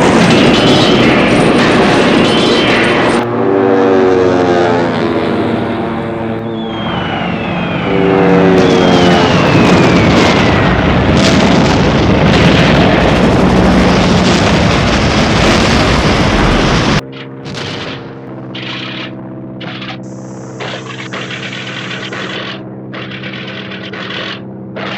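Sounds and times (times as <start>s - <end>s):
explosion roar with sharp cracks: 0.0s - 3.3s, 6.6s - 24.9s
propeller aircraft engine drone: 0.0s - 24.9s
falling high whines: 5.4s - 11.0s, 17.1s - 24.9s.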